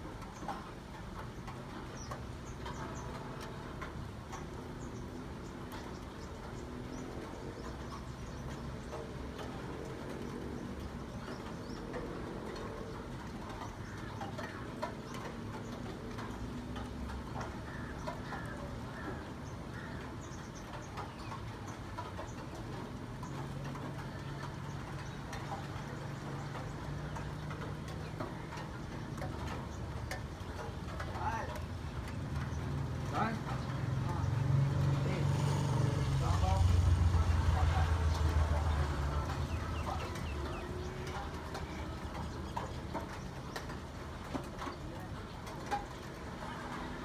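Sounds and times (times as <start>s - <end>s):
drip-like ticks: 0.0s - 47.0s
steady rain falling: 0.0s - 47.0s.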